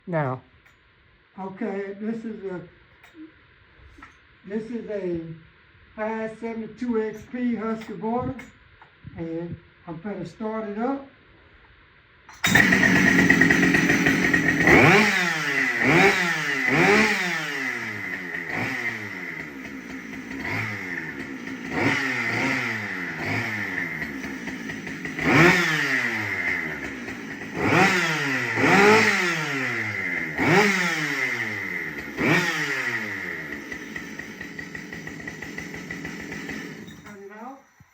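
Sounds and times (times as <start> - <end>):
chainsaw revving: 12.4 - 37.2.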